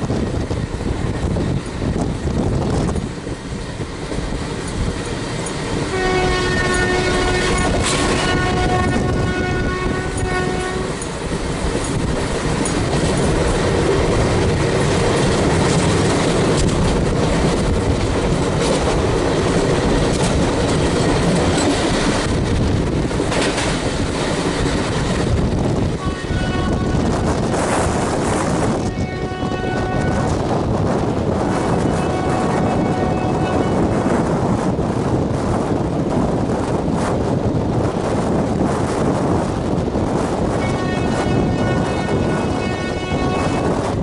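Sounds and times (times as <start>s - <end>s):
train wheels clattering: 0.0s - 34.7s
locomotive horn: 5.9s - 11.0s, 26.0s - 27.4s, 28.8s - 30.5s, 31.6s - 33.9s, 40.6s - 43.8s.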